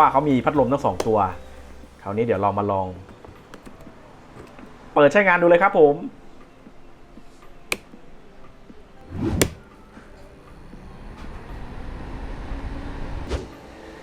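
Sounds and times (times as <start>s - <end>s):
switch clicks: 7.7s - 8.0s, 9.4s - 9.6s.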